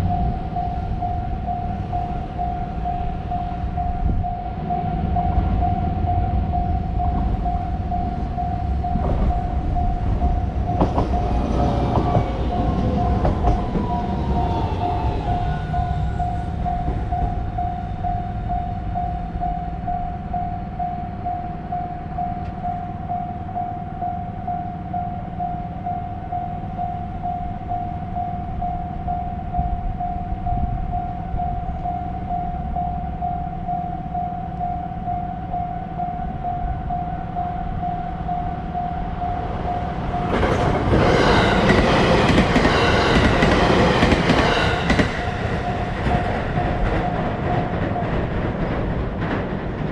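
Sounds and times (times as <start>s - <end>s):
level-crossing warning bell: 0.0s - 49.9s
train rumbling past: 0.0s - 49.9s
train wheel clacks: 7.0s - 18.2s, 39.2s - 49.9s.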